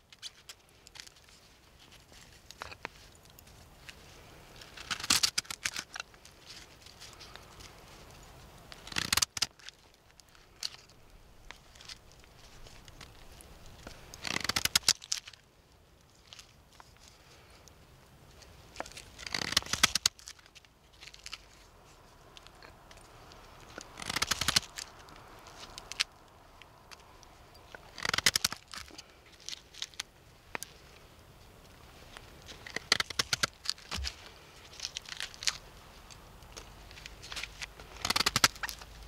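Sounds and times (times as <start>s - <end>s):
knife scraping a dry stick: 0.0s - 9.8s, 10.4s - 15.4s, 18.4s - 26.2s, 27.0s - 31.0s, 32.1s - 35.6s.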